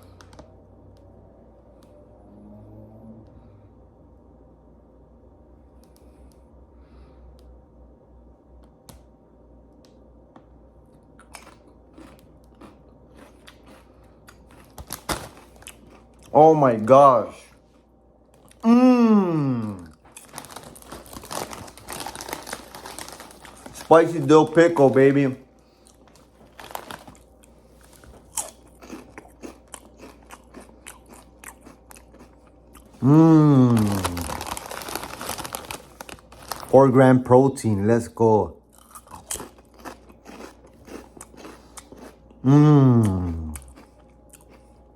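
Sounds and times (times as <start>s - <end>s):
potato chips crunching: 11.0s - 17.6s, 18.3s - 37.8s, 38.7s - 44.8s.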